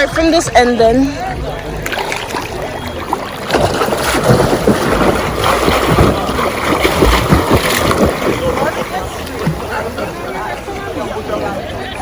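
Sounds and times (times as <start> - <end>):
water splashing and sloshing: 0.0 - 12.0.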